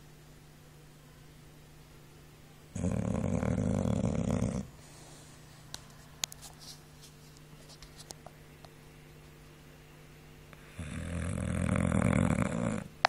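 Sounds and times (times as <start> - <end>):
dog snoring: 2.7 - 4.7, 10.6 - 12.9.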